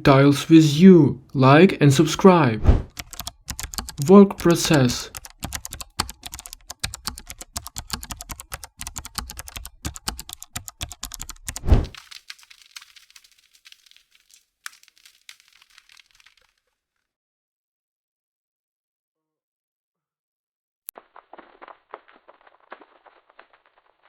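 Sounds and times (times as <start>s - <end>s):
fast typing on keyboard: 2.9s - 16.5s.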